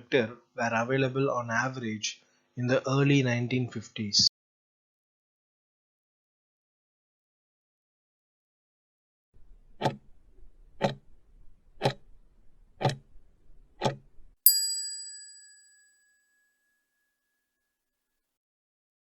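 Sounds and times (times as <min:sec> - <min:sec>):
timer ticking: 0:09.8 - 0:10.0, 0:10.8 - 0:11.0, 0:11.8 - 0:12.0, 0:12.8 - 0:13.0
bell ding: 0:14.5 - 0:17.1.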